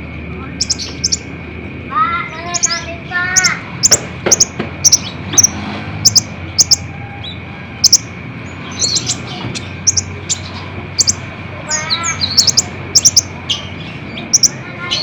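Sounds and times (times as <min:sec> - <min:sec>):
faint high hum: 0:00.0 - 0:15.0
sunbird high-pitched chips: 0:01.9 - 0:06.9, 0:08.7 - 0:15.0.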